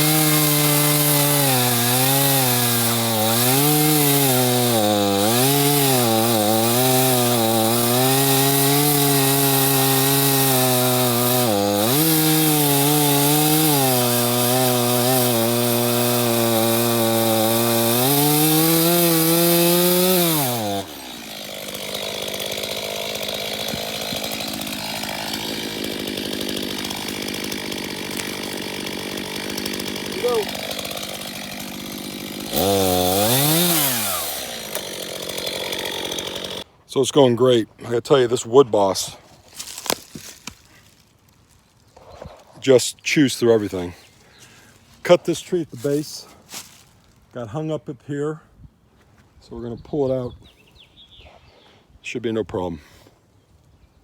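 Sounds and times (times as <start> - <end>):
chainsaw cutting wood: 0.0 - 37.2, 37.9 - 47.3.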